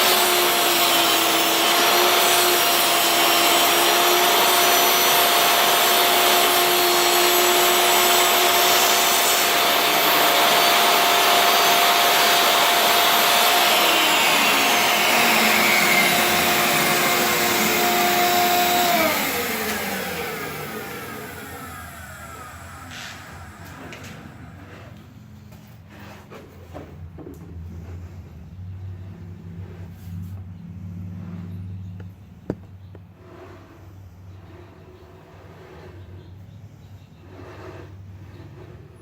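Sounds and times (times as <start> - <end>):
table saw whining: 0.0 - 25.2.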